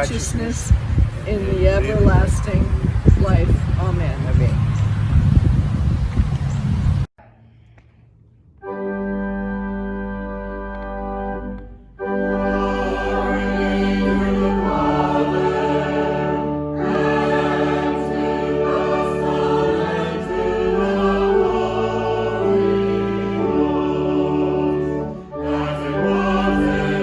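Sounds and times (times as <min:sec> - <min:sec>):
choir singing a hymn: 0:12.0 - 0:27.0.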